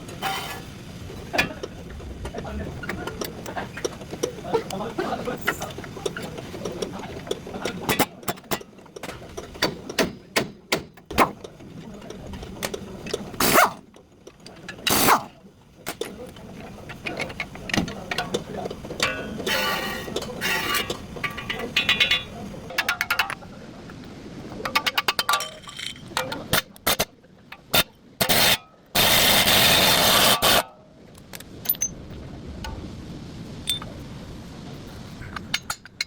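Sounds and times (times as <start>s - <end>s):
metal tools knocking and clinking: 16.9s - 23.4s, 24.6s - 28.4s, 31.6s - 32.0s, 33.7s - 33.9s
metallic ringing: 19.0s - 23.2s
loud noisy bursts: 28.2s - 30.6s.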